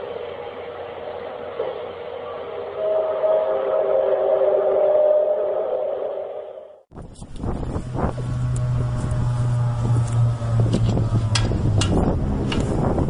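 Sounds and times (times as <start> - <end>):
low droning hum: 0.0 - 13.0
wind buffeting microphone: 6.9 - 13.0.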